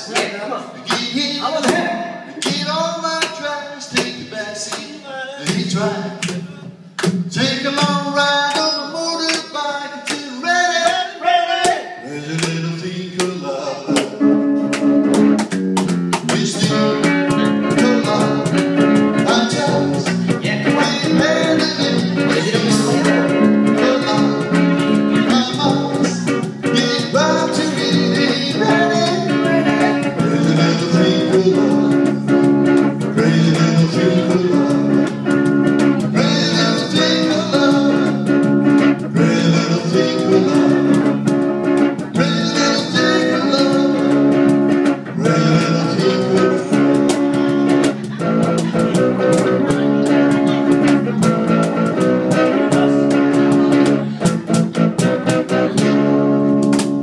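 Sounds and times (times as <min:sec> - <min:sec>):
person singing: 0:00.8 - 0:15.1, 0:16.2 - 0:57.0
live band playing: 0:11.6 - 0:57.0.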